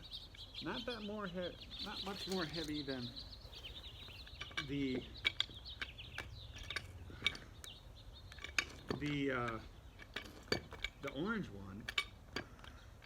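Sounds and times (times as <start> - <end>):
pipe wrench clinking on metal: 4.2 - 7.5, 8.3 - 12.8.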